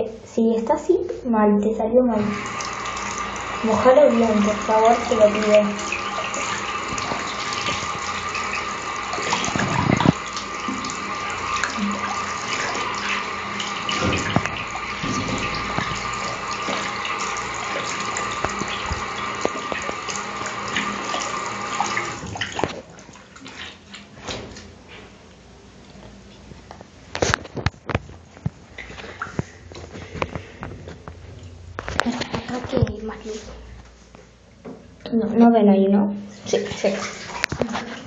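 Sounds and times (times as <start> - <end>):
tap water running into sink: 2.1 - 24.7, 36.4 - 38.0.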